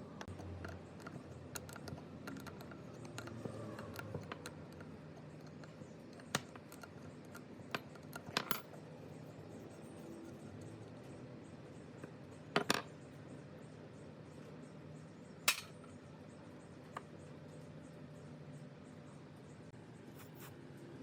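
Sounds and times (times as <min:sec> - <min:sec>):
small metallic parts clinking: 0:15.5 - 0:15.9.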